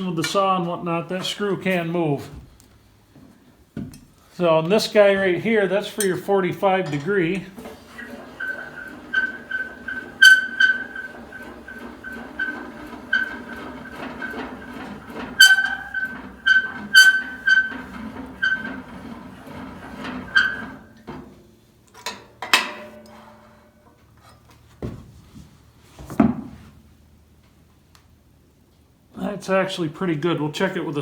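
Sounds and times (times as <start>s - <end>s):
metal squeaking: 5.9s - 21.1s.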